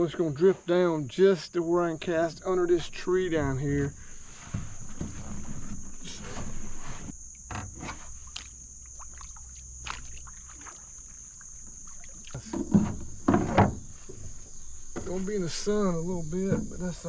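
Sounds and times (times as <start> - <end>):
insects trilling: 0.0 - 17.0
rope and water noise: 2.3 - 17.0
anchor knocking against hull: 11.6 - 15.2.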